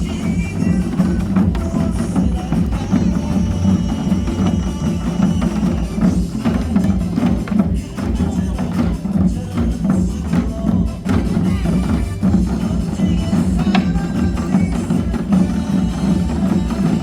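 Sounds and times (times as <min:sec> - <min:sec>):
group drumming in unison: 0:00.0 - 0:17.0
music: 0:00.0 - 0:17.0.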